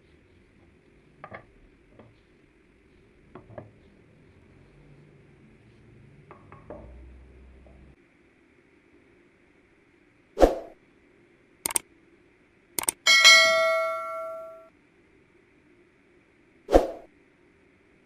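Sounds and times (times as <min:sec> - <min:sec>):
low hum: 0:12.8 - 0:14.7.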